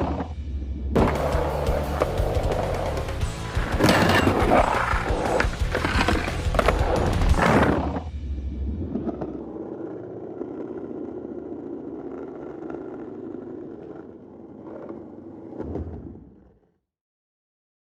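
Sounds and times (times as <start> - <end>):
skateboard clacks: 1.0 - 8.1, 8.9 - 16.7
skateboard wheels rolling on pavement: 1.0 - 16.8.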